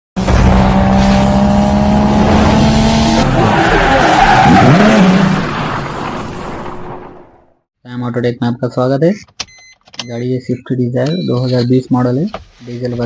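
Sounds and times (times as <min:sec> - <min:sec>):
tyres skidding: 0:00.6 - 0:07.5.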